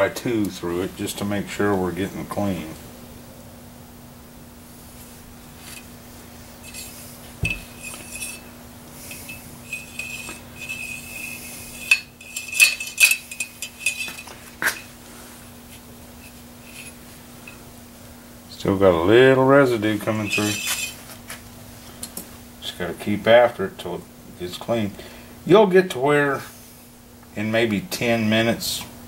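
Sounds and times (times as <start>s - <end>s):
steady low hum: 0.0s - 29.0s
cleaning rod scraping in barrel: 5.6s - 5.9s, 6.6s - 14.9s, 16.2s - 17.6s, 20.0s - 21.2s.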